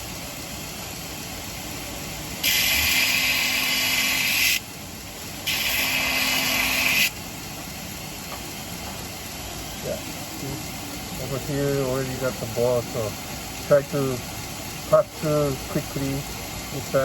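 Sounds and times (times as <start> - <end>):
sharpening machine humming: 0.7 - 17.0
blade grinding on sharpening wheel: 2.4 - 4.6, 5.5 - 7.2.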